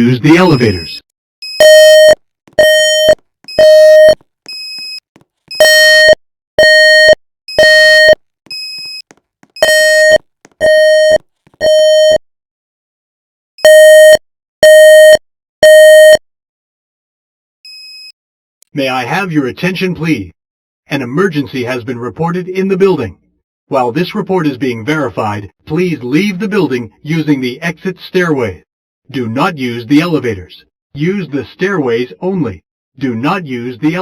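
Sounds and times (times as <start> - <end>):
fire alarm beeps: 0.5 - 9.0, 9.6 - 12.2, 13.6 - 16.2.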